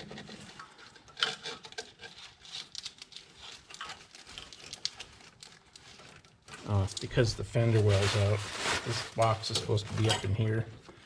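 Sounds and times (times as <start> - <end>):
wires rustling: 2.0 - 10.6.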